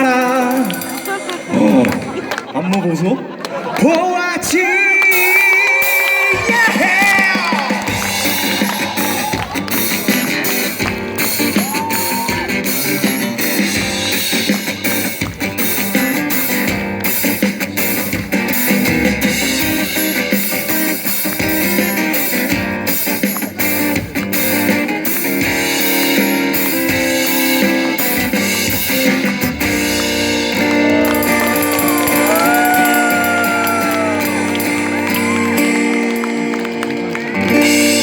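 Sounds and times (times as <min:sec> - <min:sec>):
live band with guitar and drums: 0:00.0 - 0:02.5, 0:05.0 - 0:38.0
sliding guitar melody: 0:08.0 - 0:38.0.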